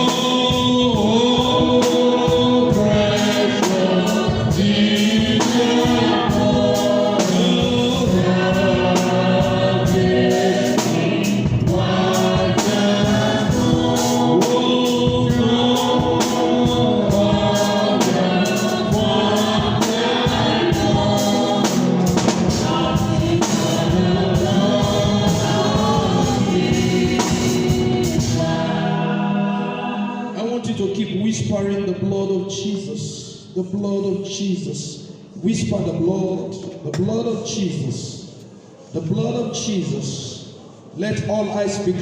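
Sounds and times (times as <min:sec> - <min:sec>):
steady percussion beat: 0:00.0 - 0:29.6
congregation singing a hymn: 0:00.0 - 0:42.0.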